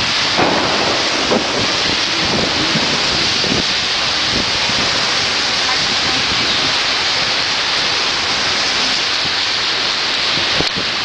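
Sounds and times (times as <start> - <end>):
heavy rain pouring: 0.0 - 11.0.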